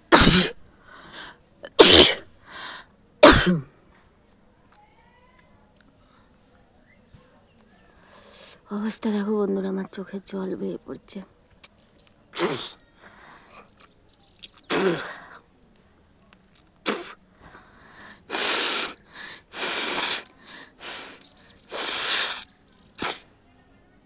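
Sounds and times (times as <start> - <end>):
woman sneezing: 0.1 - 0.6, 1.7 - 2.2, 3.2 - 3.7, 12.4 - 12.8, 14.7 - 15.2, 16.9 - 17.2, 18.3 - 23.3
blowing hard through nose: 18.3 - 23.3.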